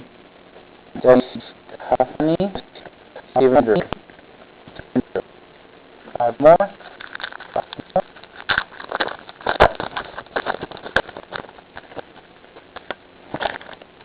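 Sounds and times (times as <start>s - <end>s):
trading card packs crinkling: 6.8s - 14.0s.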